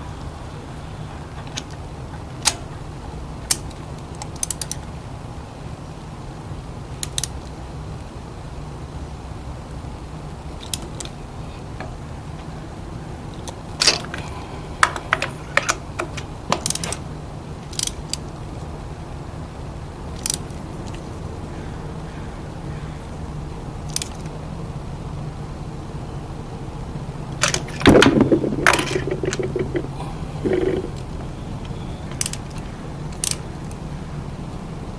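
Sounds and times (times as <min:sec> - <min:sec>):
metallic tool clicks and clanks: 0:13.8 - 0:17.0, 0:23.9 - 0:24.3, 0:27.4 - 0:31.0
low hum: 0:24.5 - 0:33.0.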